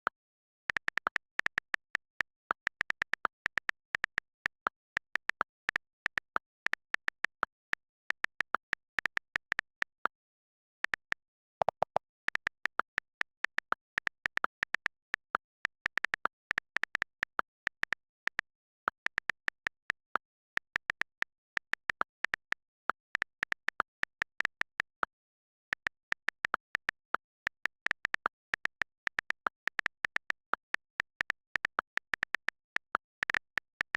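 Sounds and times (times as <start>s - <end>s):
keyboard typing clicks: 10.9s - 18.5s.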